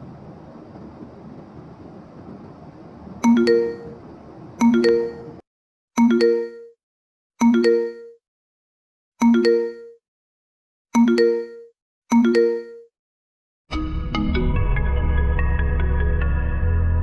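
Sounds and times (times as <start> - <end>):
bell-like chime ringtone: 3.2 - 4.0, 4.6 - 5.4, 6.0 - 6.8, 7.4 - 8.2, 9.2 - 10.0, 11.0 - 12.9.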